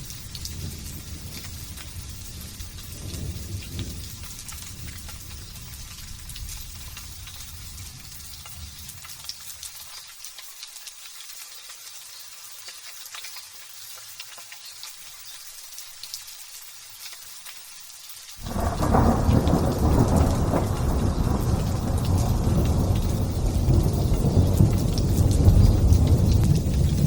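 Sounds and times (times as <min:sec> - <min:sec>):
low thunder rumble: 0:00.0 - 0:09.1, 0:18.4 - 0:27.0
light drizzle hissing: 0:00.0 - 0:27.0
loud thunder clap: 0:18.4 - 0:27.0.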